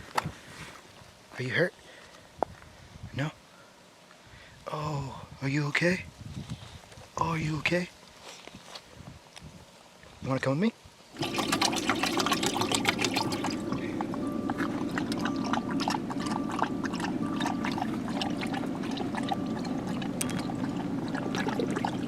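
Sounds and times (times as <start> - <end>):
small clicks and drips: 11.2 - 22.0
water trickling and splashing: 11.2 - 22.0.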